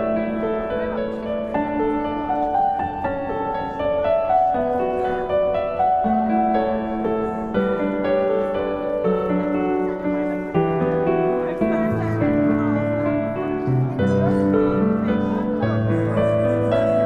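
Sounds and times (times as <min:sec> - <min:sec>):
gentle piano melody: 0:00.0 - 0:17.0.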